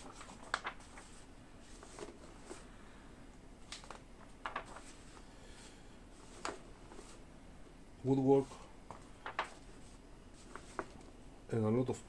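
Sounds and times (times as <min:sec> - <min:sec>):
paper sheets rustling: 0:00.0 - 0:02.8, 0:03.6 - 0:07.3, 0:08.3 - 0:11.2.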